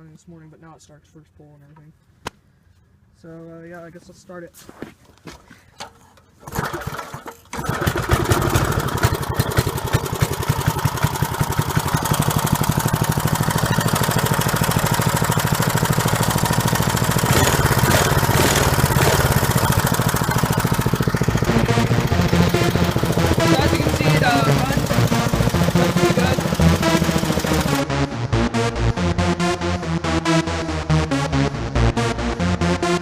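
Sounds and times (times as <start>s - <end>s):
small engine pull-started and running: 5.8s - 27.8s.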